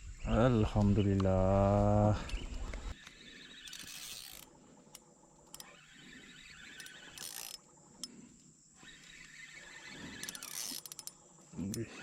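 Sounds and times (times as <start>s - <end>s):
fishing reel gear whirring: 2.9s - 12.0s.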